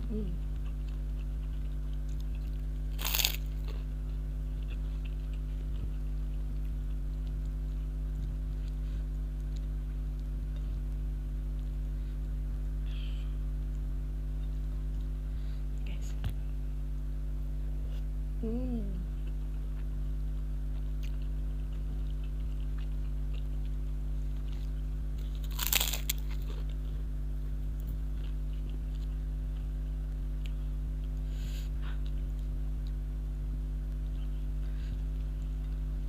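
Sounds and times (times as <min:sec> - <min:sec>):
low electrical hum: 0:00.0 - 0:36.0
chewing and mouth clicks: 0:00.4 - 0:12.3, 0:19.1 - 0:27.0, 0:27.7 - 0:31.2
crunchy bite: 0:00.6 - 0:05.5, 0:24.5 - 0:26.8.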